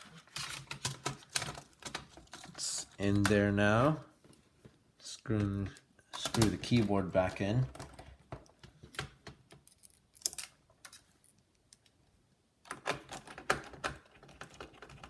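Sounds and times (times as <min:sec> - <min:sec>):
laptop keyboard clicks and taps: 0:12.7 - 0:15.0.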